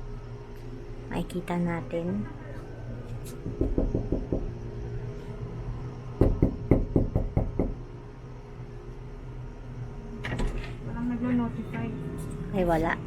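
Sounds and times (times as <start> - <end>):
knocks on a door: 3.4 - 4.5, 6.2 - 7.8.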